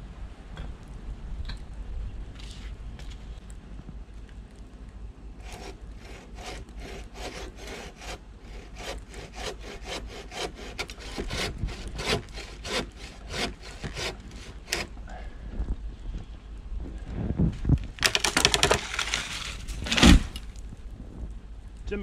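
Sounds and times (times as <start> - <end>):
hand saw cutting wood: 5.4 - 15.0, 18.0 - 20.4.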